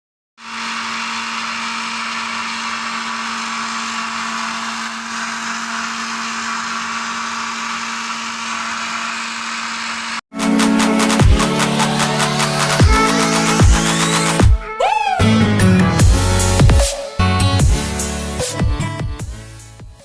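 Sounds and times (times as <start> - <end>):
blender motor whirring: 0.4 - 10.2, 11.4 - 14.5.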